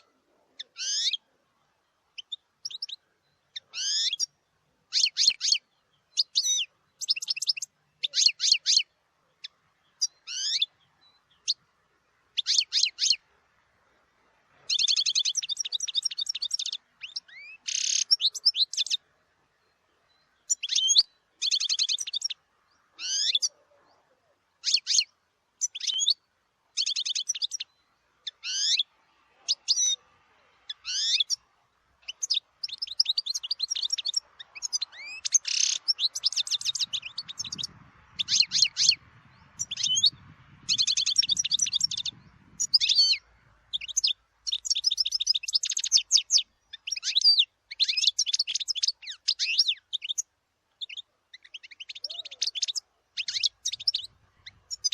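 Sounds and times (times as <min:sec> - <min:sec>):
goldfinch twittering song: 0:00.6 - 0:01.3, 0:01.9 - 0:13.3, 0:14.6 - 0:23.6, 0:24.5 - 0:30.0, 0:30.6 - 0:54.9.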